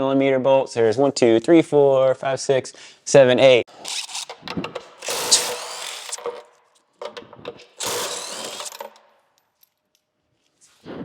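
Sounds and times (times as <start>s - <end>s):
power tool spinning bolts: 3.7s - 9.3s
clicks: 3.8s - 9.5s.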